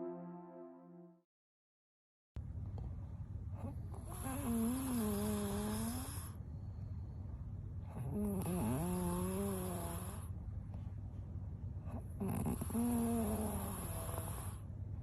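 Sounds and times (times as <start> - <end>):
woman snoring: 4.1 - 6.3, 8.0 - 10.2, 12.2 - 14.6.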